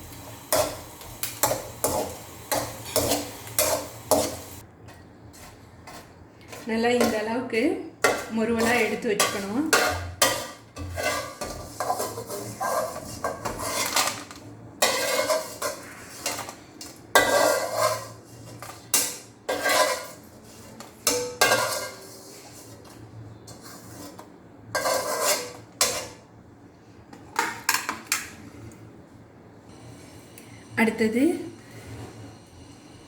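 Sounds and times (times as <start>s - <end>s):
metal utensil scraping a pan: 0.2s - 4.6s, 8.0s - 26.2s.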